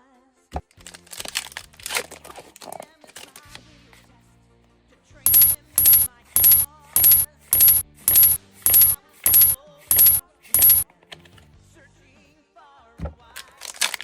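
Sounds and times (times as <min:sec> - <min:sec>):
coin-like jingle: 0:05.3 - 0:10.8.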